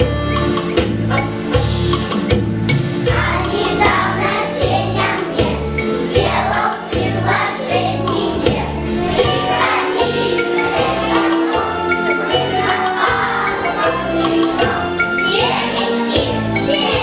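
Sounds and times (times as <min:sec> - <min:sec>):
people singing: 0:03.1 - 0:17.0.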